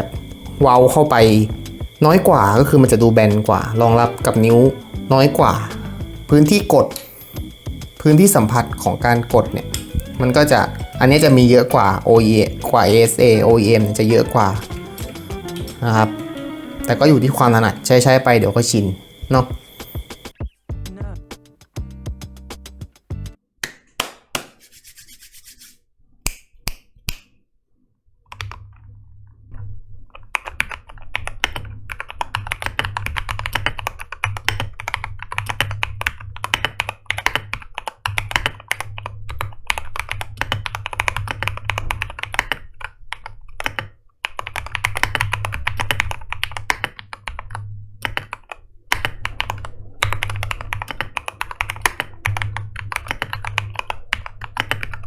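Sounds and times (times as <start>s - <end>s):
mechanical keyboard typing: 30.2s - 55.0s.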